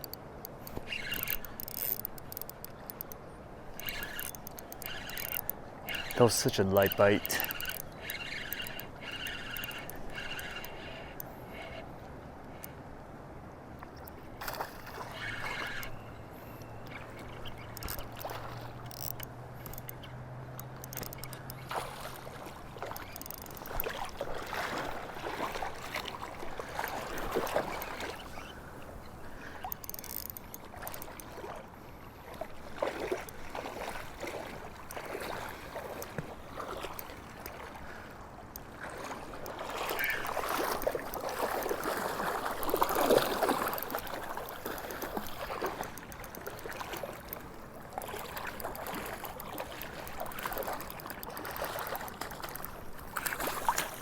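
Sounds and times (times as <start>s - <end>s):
water splashing and sloshing: 0.0s - 54.0s.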